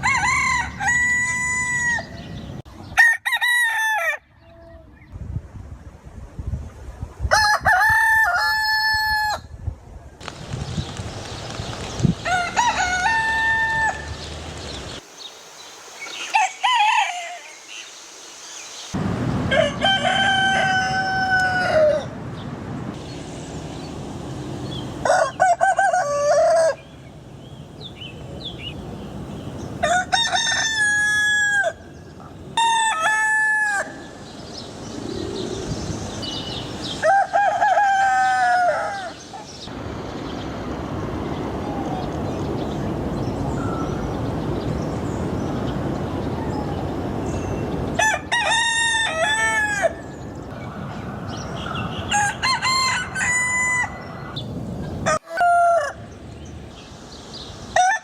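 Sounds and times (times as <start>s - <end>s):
roosters crowing: 0.0s - 4.3s, 7.3s - 9.5s, 12.1s - 14.8s, 16.1s - 17.8s, 19.5s - 22.2s, 25.0s - 27.0s, 29.8s - 32.0s, 32.6s - 34.3s, 36.2s - 39.7s, 47.9s - 50.4s, 51.6s - 56.2s, 57.7s - 58.0s.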